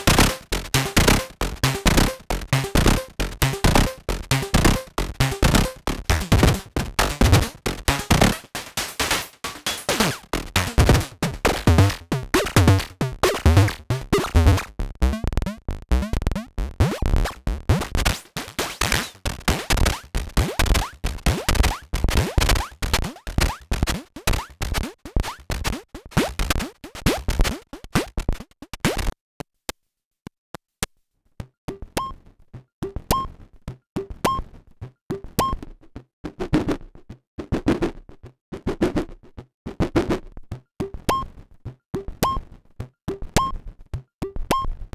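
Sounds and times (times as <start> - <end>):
synthesizer percussive hits: 0.0 - 24.4.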